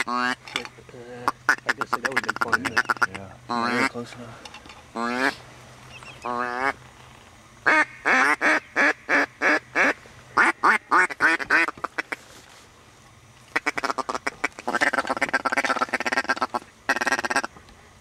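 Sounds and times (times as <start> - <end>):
duck quacking: 0.0 - 0.4, 1.2 - 4.0, 5.0 - 5.4, 6.2 - 6.8, 7.6 - 12.2, 13.5 - 17.5
duck chuckling clucks: 1.3 - 4.0, 13.5 - 17.5.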